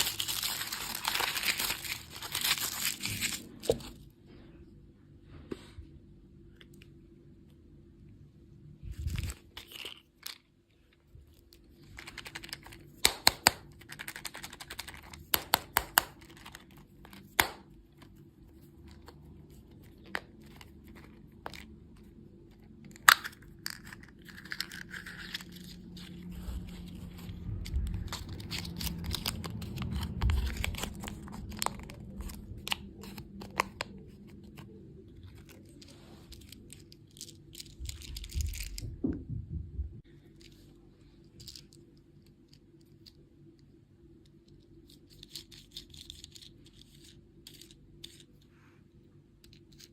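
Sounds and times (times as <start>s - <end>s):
candy wrappers crinkling: 0.0s - 4.0s, 8.9s - 10.5s, 11.3s - 18.0s, 18.8s - 38.9s, 44.7s - 48.4s
low handling rumble: 8.0s - 9.5s, 25.5s - 36.7s, 37.8s - 40.1s.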